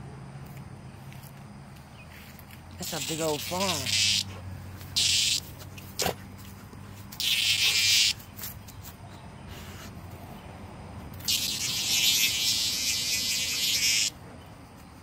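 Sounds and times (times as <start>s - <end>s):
cicada buzzing: 2.1s - 6.4s, 7.0s - 8.6s, 11.0s - 14.2s.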